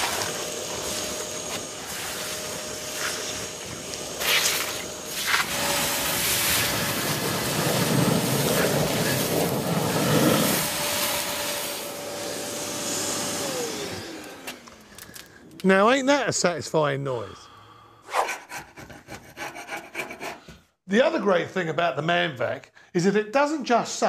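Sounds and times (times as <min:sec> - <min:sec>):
vacuum cleaner motor whine: 0:00.0 - 0:15.3
vacuum slurping wet sludge: 0:04.2 - 0:12.2.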